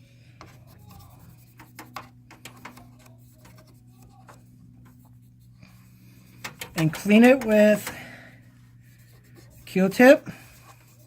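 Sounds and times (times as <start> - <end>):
steady low hum: 0.0 - 11.0
toothbrush scrubbing: 6.8 - 8.0, 9.0 - 11.0.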